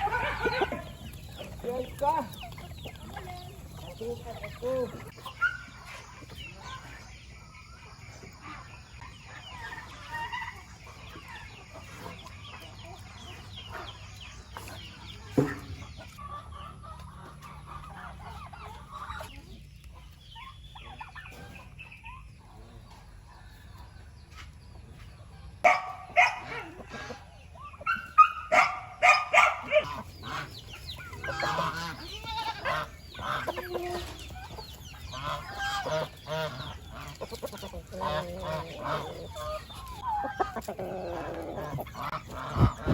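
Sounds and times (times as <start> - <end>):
chickens clucking: 0.0 - 42.9
dog barking: 25.6 - 26.6, 27.9 - 30.0.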